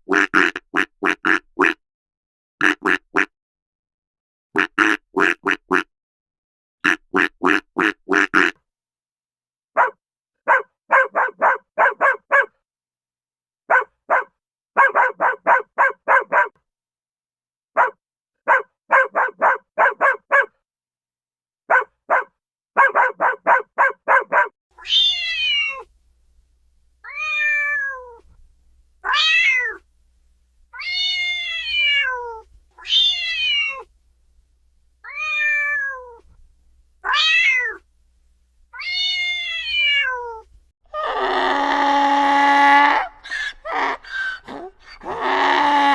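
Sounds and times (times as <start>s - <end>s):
cat meowing: 24.8s - 25.9s, 27.0s - 28.3s, 29.0s - 29.8s, 30.7s - 33.9s, 35.0s - 36.3s, 37.0s - 37.8s, 38.8s - 40.5s.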